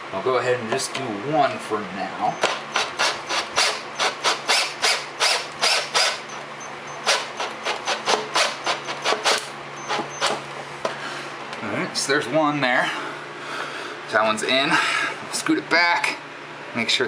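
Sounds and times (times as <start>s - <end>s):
screw rasping into wood: 2.4s - 6.4s, 7.0s - 10.4s.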